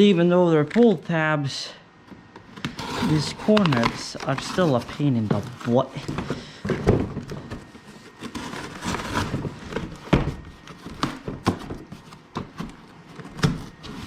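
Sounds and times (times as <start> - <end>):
cardboard box scraping and tearing: 2.7 - 5.9, 7.4 - 12.2
knocks of box handling: 5.2 - 7.8.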